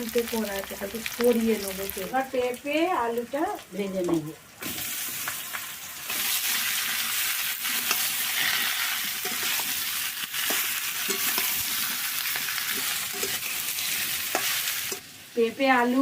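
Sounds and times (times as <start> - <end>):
food sizzling in hot oil: 0.0 - 16.0
spatula scraping a pan: 7.6 - 15.0.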